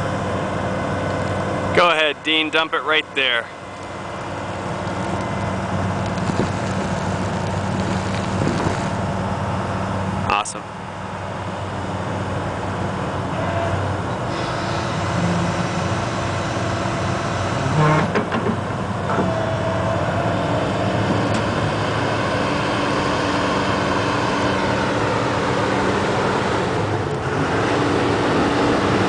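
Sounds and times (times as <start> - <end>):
excavator diesel engine running: 0.0 - 29.0
excavator clatter: 13.4 - 19.9.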